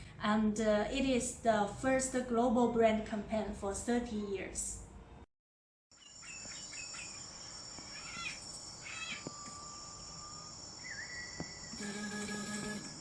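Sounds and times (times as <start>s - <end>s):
bird chirps: 6.0s - 11.8s
crickets chirping: 6.0s - 12.5s
whistle: 9.3s - 12.0s.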